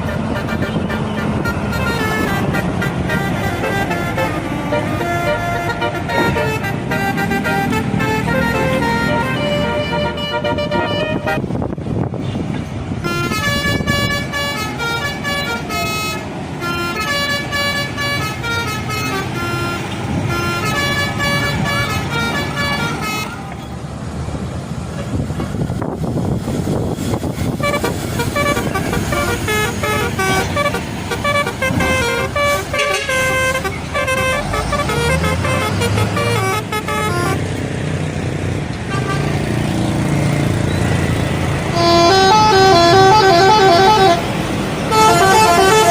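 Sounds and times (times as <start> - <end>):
musical air horn melodies: 0.0 - 11.6, 13.0 - 23.5, 27.5 - 37.5, 41.6 - 45.9.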